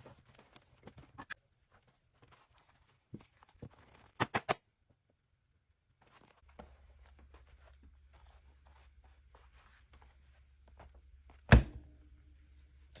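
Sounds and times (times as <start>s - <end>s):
scratching and rustling handling: 0.0s - 4.2s, 5.9s - 11.4s.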